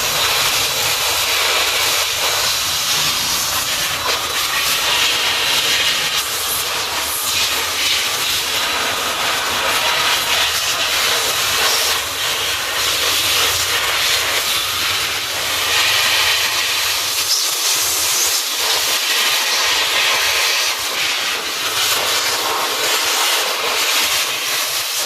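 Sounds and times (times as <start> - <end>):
air blower hissing: 0.0 - 25.0.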